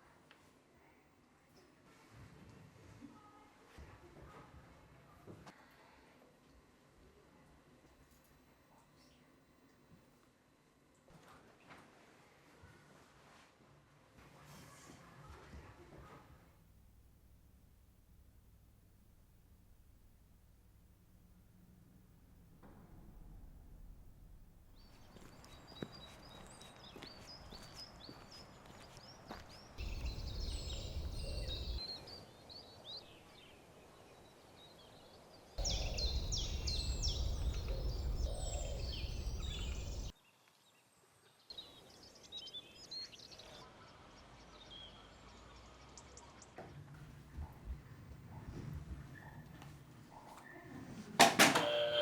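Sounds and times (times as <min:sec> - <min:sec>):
birds chirping and singing: 0:26.4 - 0:32.1, 0:35.6 - 0:40.1
low rumbling noise: 0:29.8 - 0:31.8, 0:35.6 - 0:40.1.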